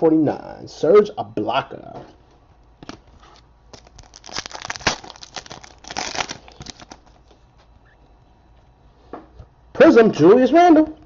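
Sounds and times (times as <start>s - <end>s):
cards and packaging rustling: 2.8s - 7.8s.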